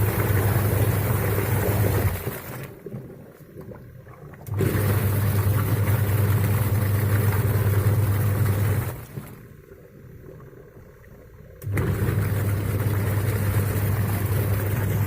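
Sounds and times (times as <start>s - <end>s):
washing machine motor humming: 0.0s - 15.0s.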